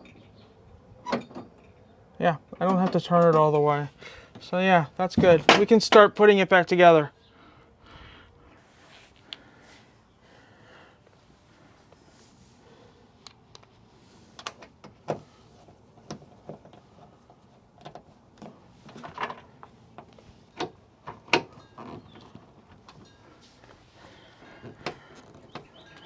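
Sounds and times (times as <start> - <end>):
car door parts clicking and knocking: 5.1 - 6.0.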